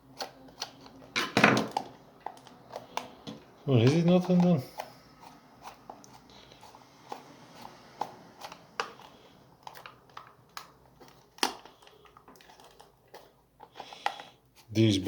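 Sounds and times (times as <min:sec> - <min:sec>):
plastic housing clicks and scrapes: 0:00.2 - 0:14.4.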